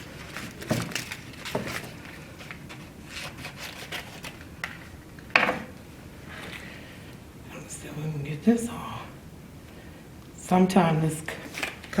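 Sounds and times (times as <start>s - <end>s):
contact paper rustling and crackling: 0.0s - 5.0s.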